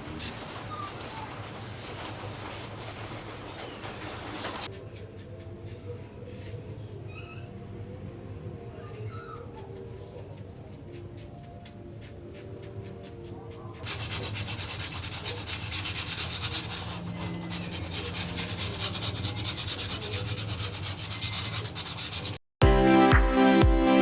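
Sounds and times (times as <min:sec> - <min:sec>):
styrofoam being rubbed: 0:00.0 - 0:06.7, 0:09.4 - 0:22.4
loud electronic music: 0:22.6 - 0:24.0.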